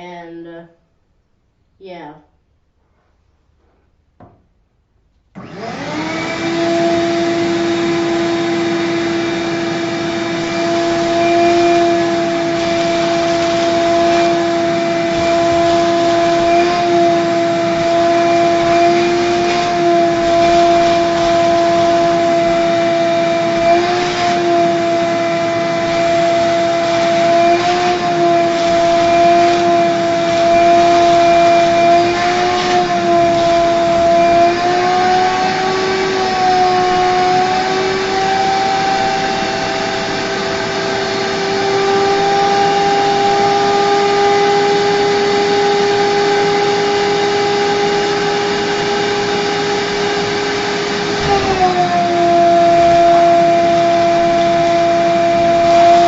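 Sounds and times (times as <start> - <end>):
vacuum cleaner running: 5.3 - 56.0.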